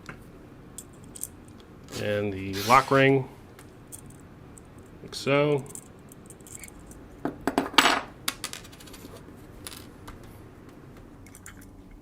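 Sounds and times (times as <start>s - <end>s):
small metal parts clinking: 5.6s - 7.0s.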